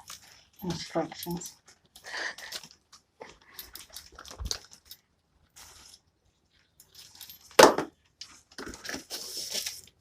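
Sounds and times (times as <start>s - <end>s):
soft rustle: 0.0s - 7.5s.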